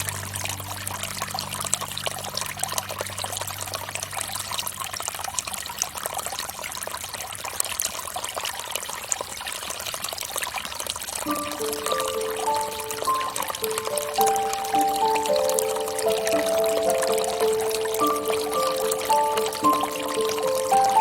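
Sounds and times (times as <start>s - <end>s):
fountain water trickling and splashing: 0.0s - 21.0s
low music notes: 11.3s - 21.0s.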